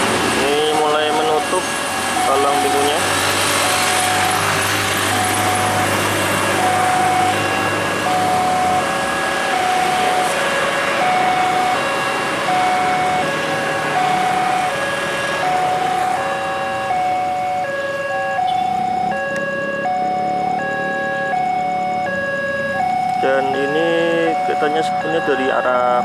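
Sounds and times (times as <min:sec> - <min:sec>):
level crossing alarm tones: 0:00.0 - 0:26.0
road traffic noise: 0:00.0 - 0:26.0
low engine hum: 0:01.7 - 0:25.6.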